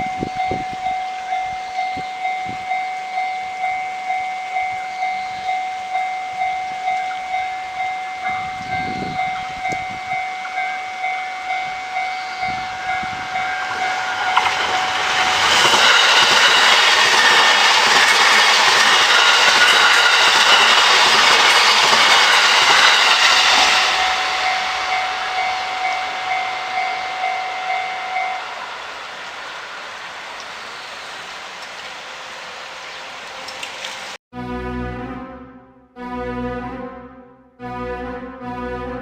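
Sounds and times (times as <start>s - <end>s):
level-crossing warning bell: 0.0s - 31.0s
train passing: 0.0s - 34.2s.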